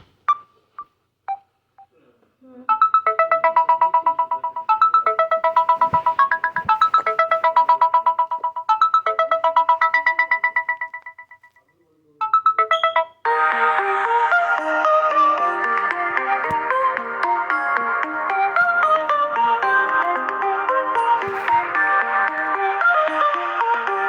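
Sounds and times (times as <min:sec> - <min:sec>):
bright electronic ringtone: 0:02.7 - 0:24.0
fuller electronic ringtone: 0:02.7 - 0:24.0.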